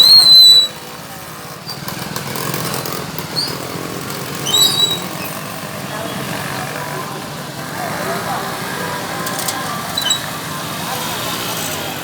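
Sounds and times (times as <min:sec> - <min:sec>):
high-pitched whistle-like tone: 0:00.0 - 0:00.8
street traffic engines: 0:00.0 - 0:12.0.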